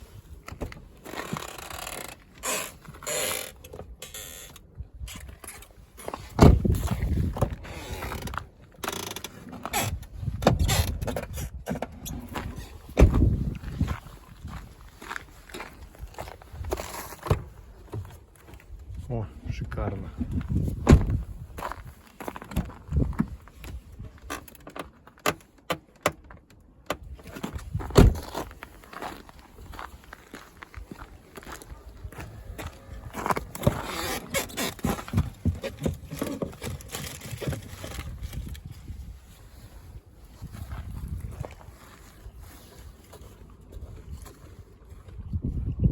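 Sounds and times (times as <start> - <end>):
car door creaking and clicking: 0.5 - 13.4, 20.8 - 21.2, 24.2 - 28.4, 33.1 - 38.4
car door thumps: 6.4 - 7.6, 13.0 - 13.3, 20.8 - 21.2, 27.9 - 28.4
car door checks creaking: 20.8 - 21.2, 28.0 - 28.3.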